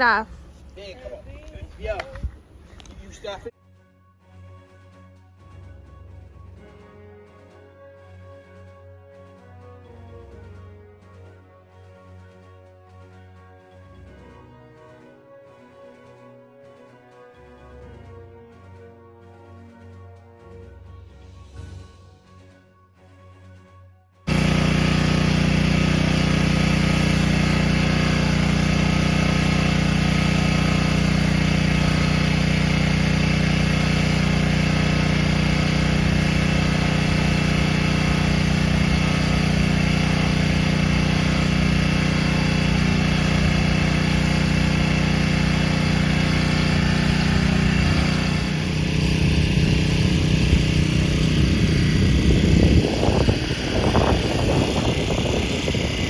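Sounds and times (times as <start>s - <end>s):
pressure washer engine running: 24.3s - 56.0s.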